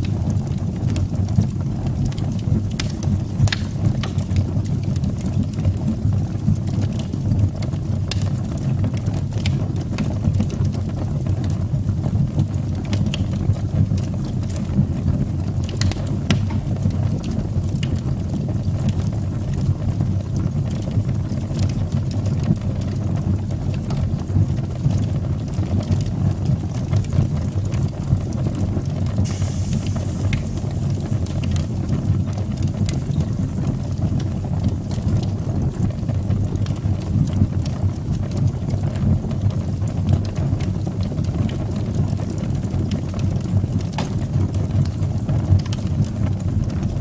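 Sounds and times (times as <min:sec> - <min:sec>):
fire crackling and popping: 0:00.0 - 0:47.0
fire rumbling in fireplace: 0:00.0 - 0:47.0
brief hiss: 0:29.2 - 0:31.8.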